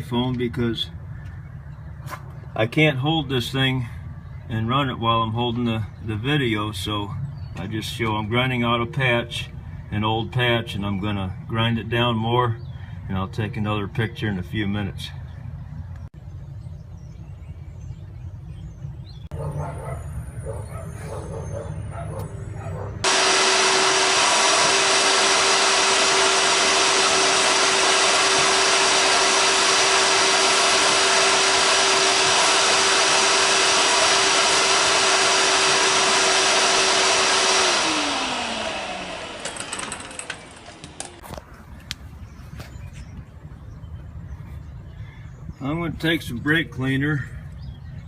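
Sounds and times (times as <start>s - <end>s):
vacuum cleaner running: 23.0s - 41.3s.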